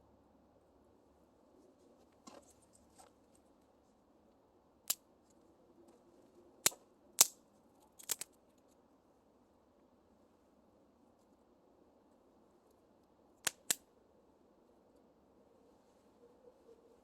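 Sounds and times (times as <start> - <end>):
sharp cracks: 6.6 - 7.4, 8.0 - 8.3, 13.4 - 13.8.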